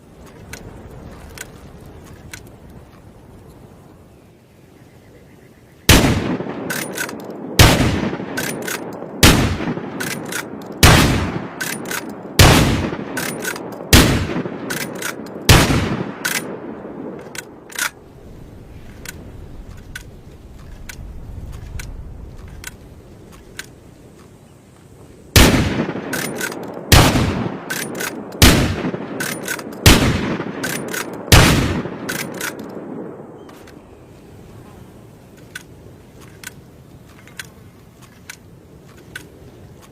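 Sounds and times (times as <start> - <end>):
small clicks: 0.1 - 3.6, 18.8 - 24.4, 35.3 - 39.9
shotgun shots: 5.9 - 16.6, 25.4 - 33.1.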